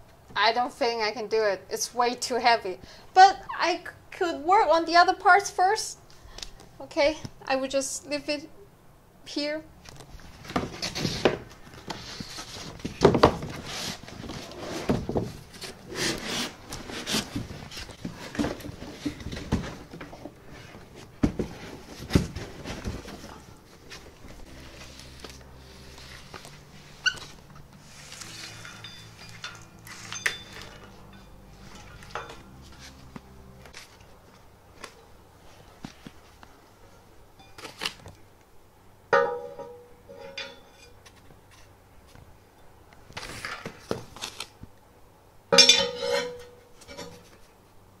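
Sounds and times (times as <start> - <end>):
quiet steady tones: 23.3 - 37.6
packing material rustling: 43.2 - 44.6.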